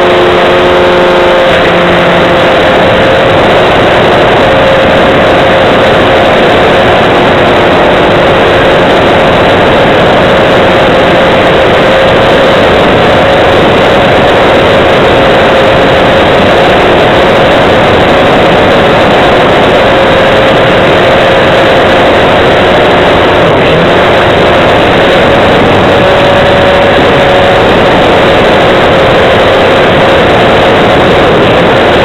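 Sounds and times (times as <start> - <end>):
rushing wind noise: 0.0 - 32.0.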